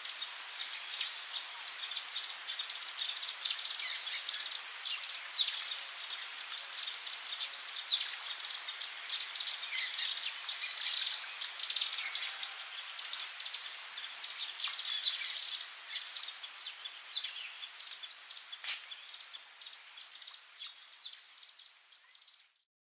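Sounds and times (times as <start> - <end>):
high-pitched insect chorus: 0.0 - 22.6
bird chirps and calls: 3.8 - 5.6, 9.8 - 13.7.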